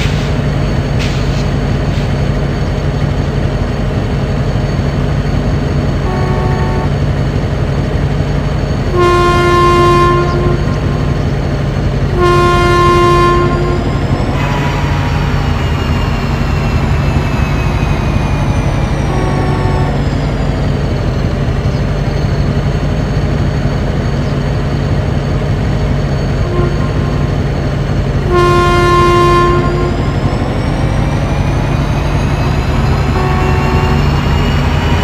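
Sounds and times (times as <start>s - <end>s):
train rumble: 0.0s - 35.0s
train horn blasts: 6.0s - 7.1s, 8.9s - 11.3s, 12.1s - 15.5s, 19.0s - 20.0s, 26.4s - 30.5s, 32.8s - 34.4s.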